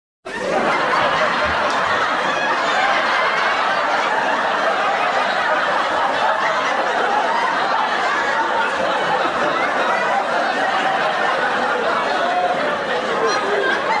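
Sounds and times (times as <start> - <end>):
audience laughing: 0.3 - 14.0
clapping: 1.5 - 2.0.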